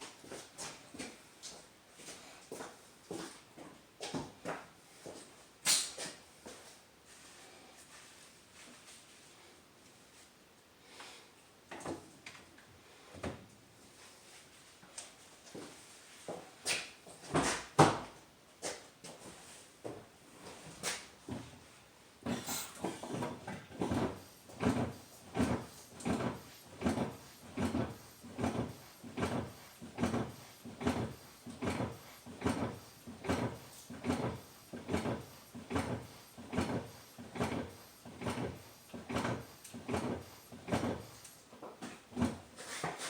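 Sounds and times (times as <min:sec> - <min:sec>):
brake pedal pumping: 0:22.3 - 0:41.4.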